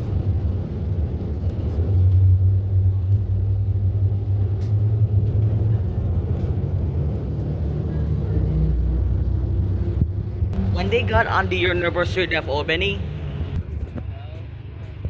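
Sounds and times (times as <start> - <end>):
vehicle engine low rumble: 0.0 - 15.0.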